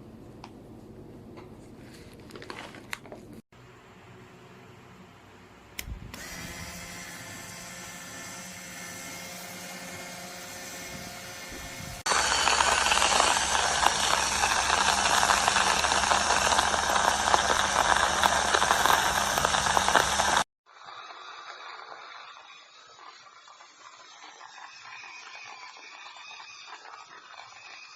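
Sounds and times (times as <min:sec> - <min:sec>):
coffee grinder motor hum: 0:05.8 - 0:27.9
beans crackling in grinder: 0:12.1 - 0:27.6.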